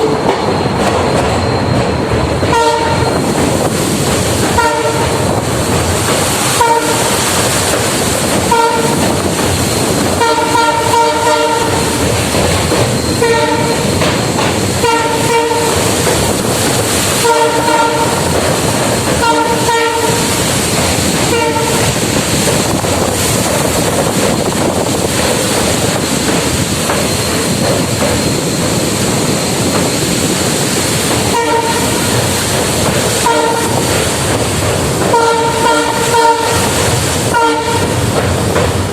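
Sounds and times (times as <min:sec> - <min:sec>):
train wheels clacking on track: 0:00.0 - 0:38.9
locomotive horn blasts: 0:02.5 - 0:03.2, 0:04.6 - 0:05.2, 0:06.6 - 0:07.2, 0:08.4 - 0:09.0, 0:10.2 - 0:12.0, 0:13.2 - 0:13.8, 0:14.8 - 0:15.9, 0:17.2 - 0:18.3, 0:19.2 - 0:20.4, 0:21.3 - 0:22.0, 0:31.3 - 0:32.0, 0:33.2 - 0:33.9, 0:35.1 - 0:36.7, 0:37.3 - 0:38.0.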